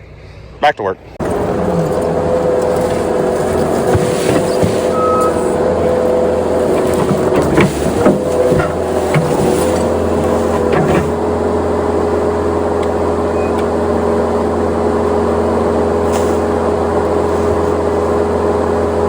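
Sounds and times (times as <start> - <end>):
engine running: 0.0 - 19.0
clanks and rattles: 1.2 - 11.2.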